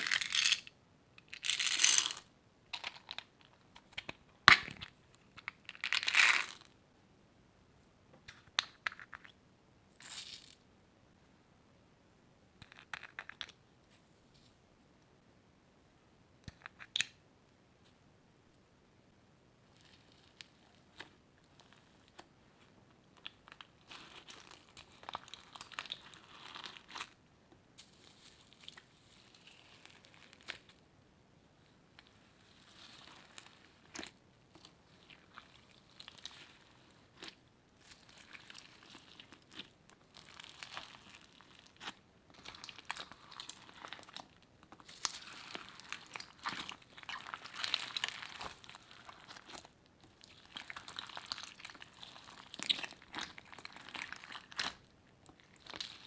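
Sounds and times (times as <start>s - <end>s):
slime crackling and squishing: 23.1s - 27.2s, 27.8s - 30.7s, 32.1s - 56.0s.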